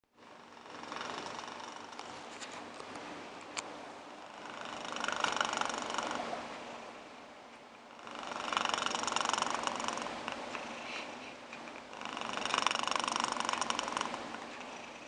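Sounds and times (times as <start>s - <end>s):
cat snoring: 0.2s - 2.3s, 4.2s - 7.0s, 7.9s - 15.0s.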